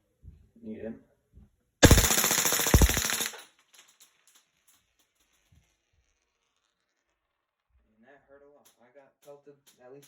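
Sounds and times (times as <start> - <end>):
bb pistol rapid fire rattle: 1.8 - 4.0.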